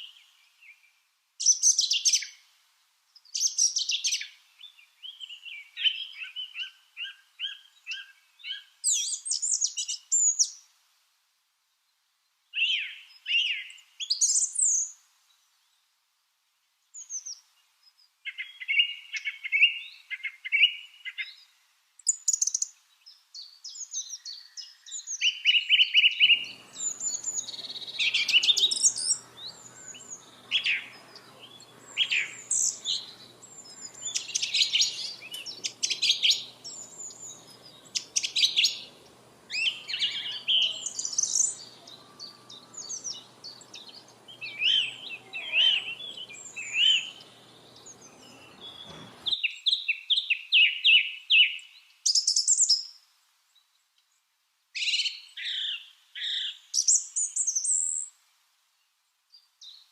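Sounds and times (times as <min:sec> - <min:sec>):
background hiss: 0:00.0 - 0:59.9
lovebirds chirping: 0:03.2 - 0:10.7, 0:17.0 - 0:53.0
faint hum: 0:26.4 - 0:49.3.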